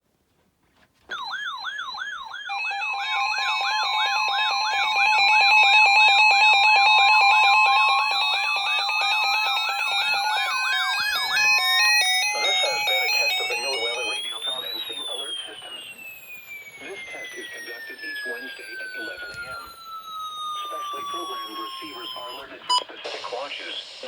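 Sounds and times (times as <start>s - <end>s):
electronic siren yelping: 1.1s - 22.8s
tone gliding upward: 1.1s - 22.8s
electronic beeping tones: 1.1s - 22.9s.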